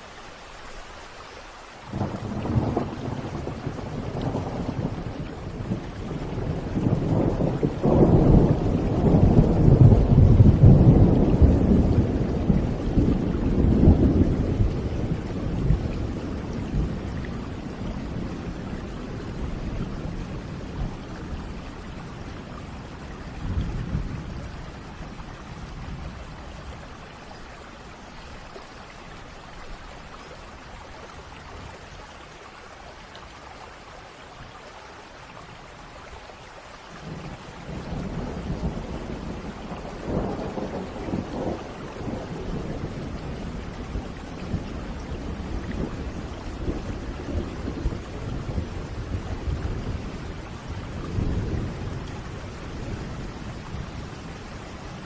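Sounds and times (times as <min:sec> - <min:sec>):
steady rain: 0:00.0 - 0:55.0
rolling thunder: 0:01.9 - 0:26.9, 0:37.0 - 0:55.0.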